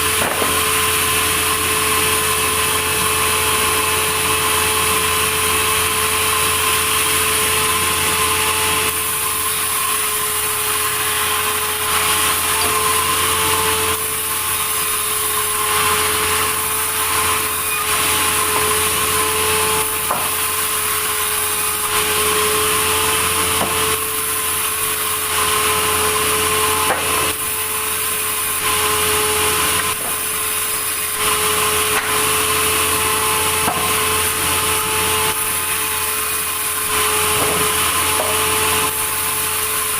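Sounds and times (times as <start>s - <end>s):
sawmill saw cutting log: 0.0s - 39.9s.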